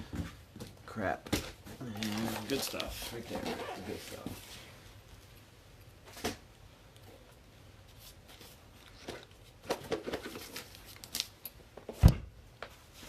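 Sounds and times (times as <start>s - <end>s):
packaging rustling and crinkling: 1.4s - 5.2s, 7.0s - 11.6s.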